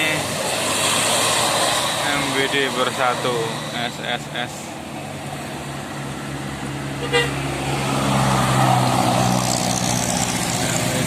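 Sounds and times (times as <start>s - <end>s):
bus engine passing: 0.0s - 11.0s
bus horn toot: 7.0s - 7.4s.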